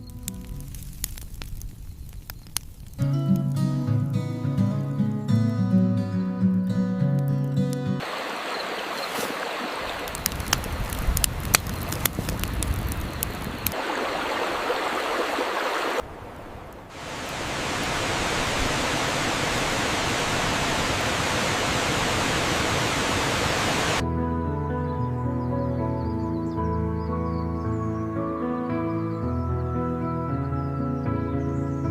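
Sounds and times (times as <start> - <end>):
campfire crackling and popping: 0.0 - 5.0, 6.0 - 22.9
waterfall rushing: 8.0 - 12.0, 13.1 - 24.0.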